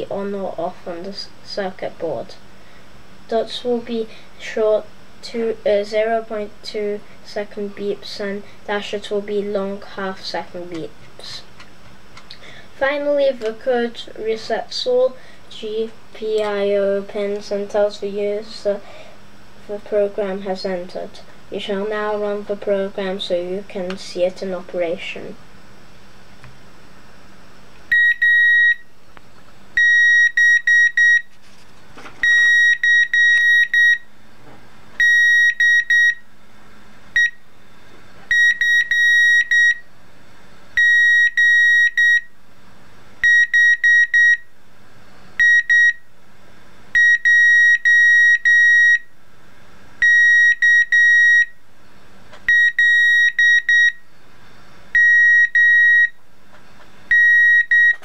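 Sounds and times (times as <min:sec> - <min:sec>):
morse code beeps: 0:27.9 - 0:28.8, 0:29.8 - 0:31.3, 0:32.2 - 0:34.0, 0:35.0 - 0:36.2, 0:37.2 - 0:37.4, 0:38.3 - 0:39.8, 0:40.8 - 0:42.3, 0:43.2 - 0:44.4, 0:45.4 - 0:46.0, 0:52.5 - 0:54.0, 0:55.0 - 0:56.2, 0:57.1 - 0:58.0.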